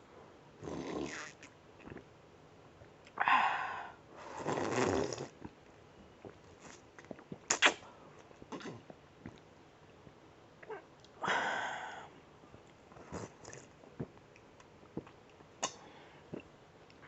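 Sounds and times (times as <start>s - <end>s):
person slurping and snorting: 0.6s - 2.0s, 4.3s - 5.4s.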